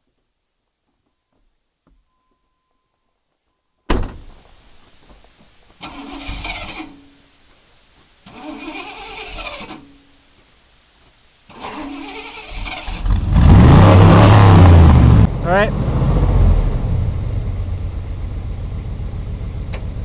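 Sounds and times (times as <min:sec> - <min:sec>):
truck engine revving: 0:11.5 - 0:20.0.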